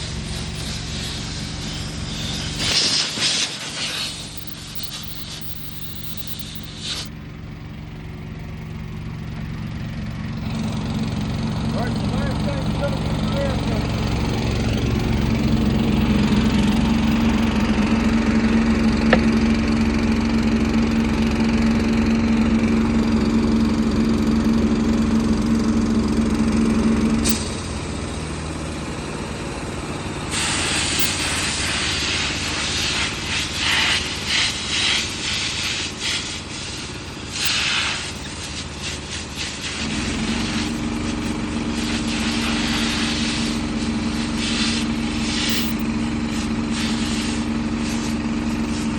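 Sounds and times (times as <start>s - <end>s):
compressed air hissing from nozzle: 0.0s - 7.1s, 30.3s - 48.9s
engine hum: 0.0s - 48.9s.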